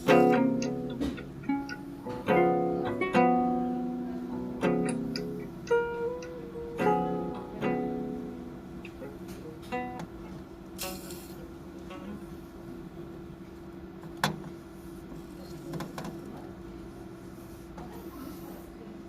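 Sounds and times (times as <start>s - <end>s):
acoustic guitar chords: 0.0s - 11.2s.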